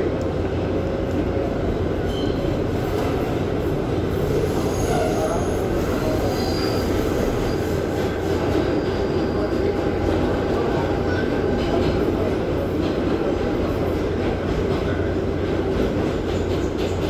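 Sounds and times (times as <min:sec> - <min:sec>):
subway train rumbling on rails: 0:00.0 - 0:17.0
high-pitched wheel squeals: 0:04.5 - 0:07.6.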